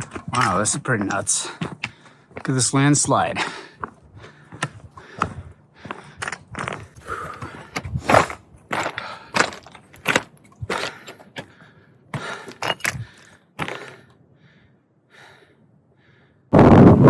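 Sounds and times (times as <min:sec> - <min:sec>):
footsteps crunching on gravel: 0:05.0 - 0:11.2.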